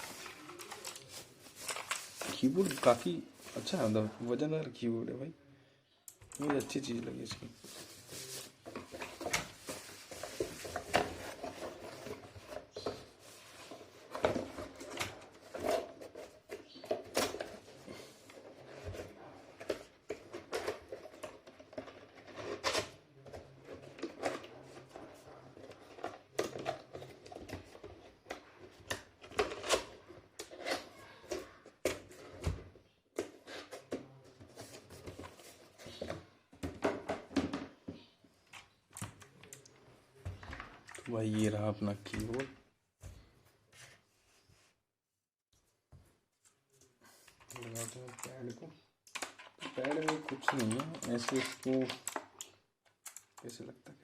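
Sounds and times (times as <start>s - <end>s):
plastic wrapping rustling: 0.0s - 4.4s, 6.3s - 31.6s.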